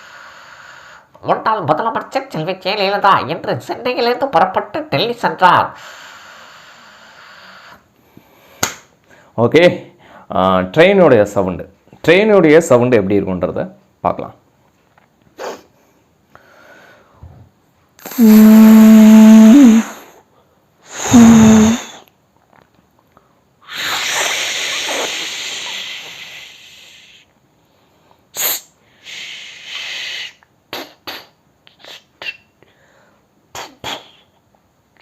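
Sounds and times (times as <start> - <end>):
man making hissing sound: 15.4 - 15.7, 18.0 - 20.2, 20.8 - 22.1, 23.6 - 27.3, 28.3 - 32.5, 33.5 - 34.4.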